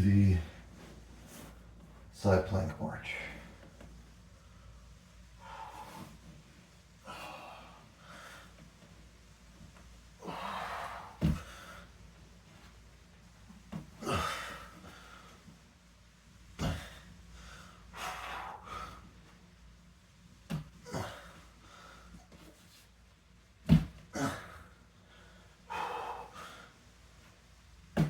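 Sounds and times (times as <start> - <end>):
man breathing heavily: 7.0 - 8.8, 10.2 - 12.0, 16.5 - 19.4, 24.1 - 27.0.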